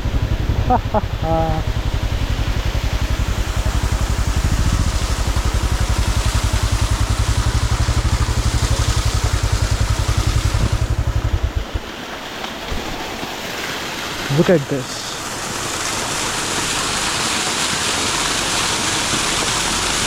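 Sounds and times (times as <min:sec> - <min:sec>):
motorcycle engine running: 0:00.0 - 0:13.1.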